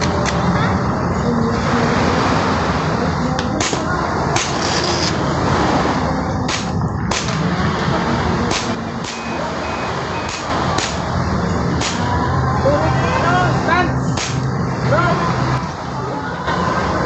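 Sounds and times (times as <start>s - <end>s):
airsoft gun shots: 6.5s - 7.4s, 8.5s - 9.2s, 11.8s - 12.0s.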